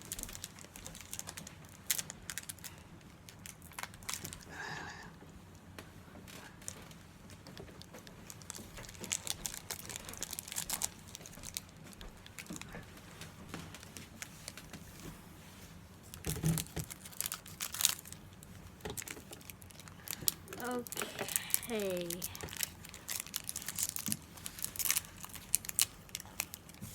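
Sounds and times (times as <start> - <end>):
foil wrapper crinkling: 0.0 - 4.5, 6.6 - 12.8, 16.1 - 26.9.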